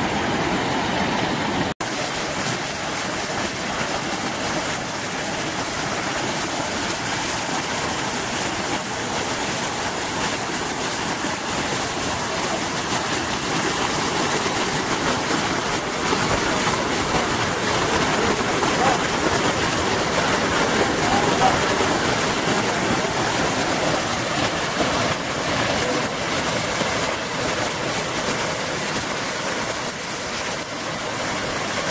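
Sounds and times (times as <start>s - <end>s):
waterfall rushing: 0.0s - 31.9s.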